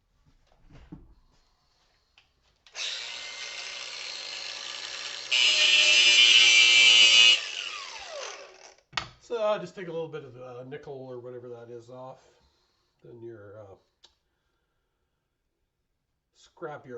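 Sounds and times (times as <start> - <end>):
electric grinder running: 2.7 - 8.8
grinder grinding metal: 2.7 - 8.8
grinder winding down whine: 2.7 - 8.8.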